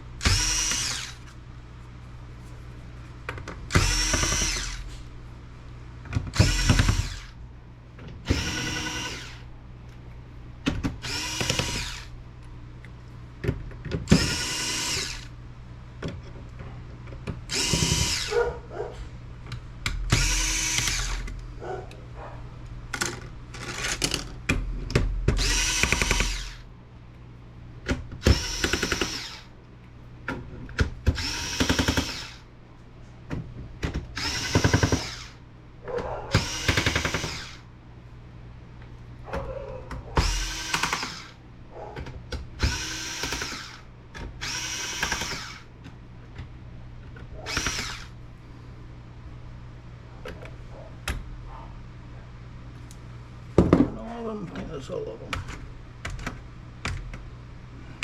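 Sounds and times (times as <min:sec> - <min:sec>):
electric screwdriver whirring: 0:00.2 - 0:01.2, 0:03.7 - 0:04.8, 0:06.4 - 0:07.3, 0:08.3 - 0:09.4, 0:11.0 - 0:12.1, 0:14.1 - 0:15.3, 0:17.5 - 0:18.3, 0:20.1 - 0:21.3, 0:25.4 - 0:26.6, 0:28.2 - 0:29.4, 0:31.1 - 0:32.4, 0:34.2 - 0:35.4, 0:36.3 - 0:37.6, 0:40.2 - 0:41.4, 0:42.6 - 0:43.8, 0:44.4 - 0:45.7, 0:47.5 - 0:48.1.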